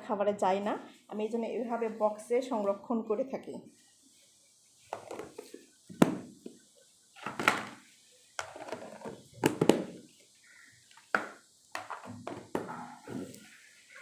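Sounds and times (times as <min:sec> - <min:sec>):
boxes knocking and clunking: 0:11.8 - 0:13.3.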